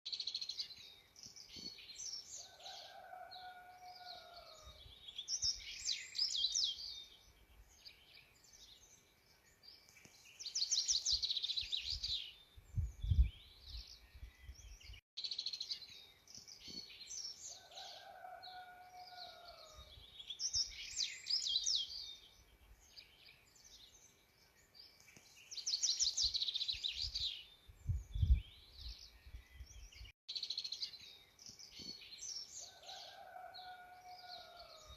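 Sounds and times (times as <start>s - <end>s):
birds singing and chirping: 0.1s - 34.9s
wind bumps on microphone: 11.9s - 15.0s, 27.8s - 30.1s.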